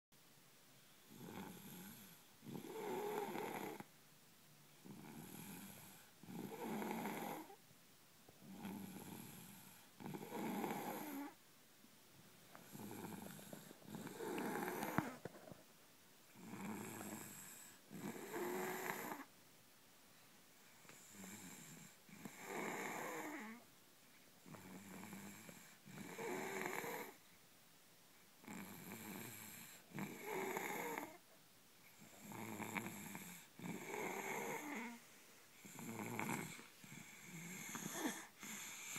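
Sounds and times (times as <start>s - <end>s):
steady snoring: 1.1s - 3.9s, 4.8s - 7.6s, 8.4s - 11.4s, 12.5s - 15.5s, 16.3s - 19.3s, 20.7s - 23.7s, 24.4s - 27.2s, 28.4s - 31.2s, 32.0s - 38.9s.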